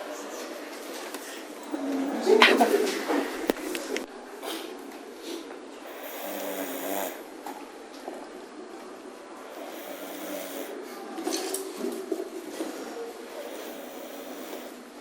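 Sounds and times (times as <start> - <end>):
person snoring: 5.9 - 7.2, 9.5 - 10.8, 13.4 - 14.8.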